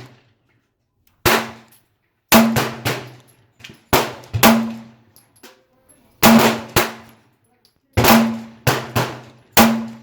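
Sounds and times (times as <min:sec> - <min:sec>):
pistol gunshots: 0:01.2 - 0:01.7, 0:02.3 - 0:03.2, 0:03.9 - 0:05.0, 0:06.2 - 0:07.2, 0:08.0 - 0:10.0.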